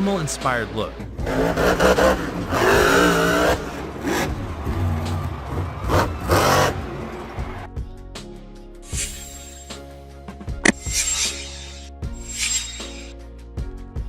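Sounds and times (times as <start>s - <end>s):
monster truck engine revving: 1.0s - 7.6s.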